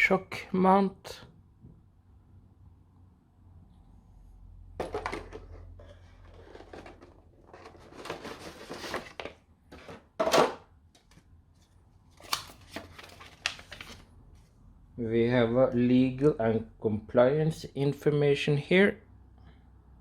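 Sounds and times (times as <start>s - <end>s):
packaging rustling and scraping: 4.8s - 10.1s, 11.6s - 14.5s.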